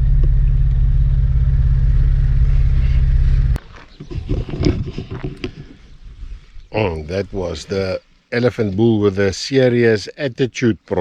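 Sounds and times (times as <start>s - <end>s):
vehicle engine droning: 0.0s - 5.2s.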